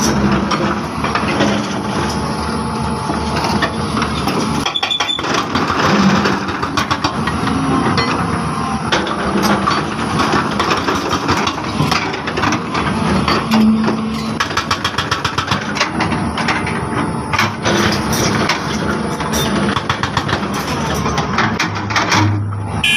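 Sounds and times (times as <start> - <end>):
diesel engine running: 0.0 - 22.9
metallic clanks and knocks: 8.9 - 22.6.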